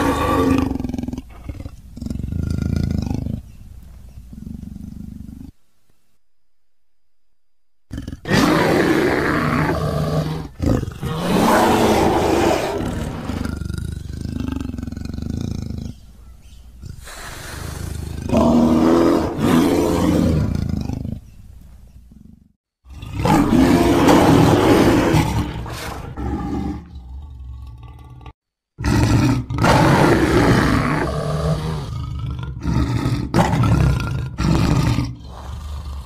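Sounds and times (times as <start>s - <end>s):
deep animal roars: 0.0s - 3.4s, 7.9s - 16.0s, 16.8s - 21.3s, 22.1s - 36.0s
animal growling: 0.0s - 3.6s, 7.9s - 21.4s, 22.1s - 36.0s.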